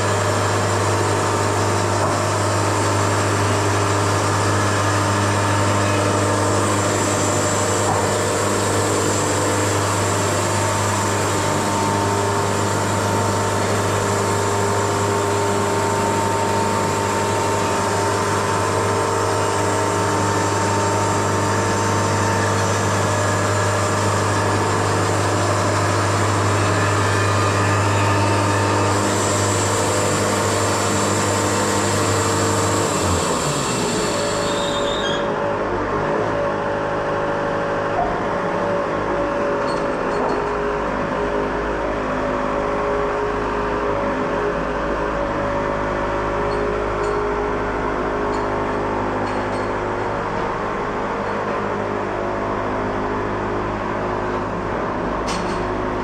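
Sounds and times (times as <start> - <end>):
band sawmill humming: 0.0 - 35.0
high whine of saw blade: 3.1 - 35.4.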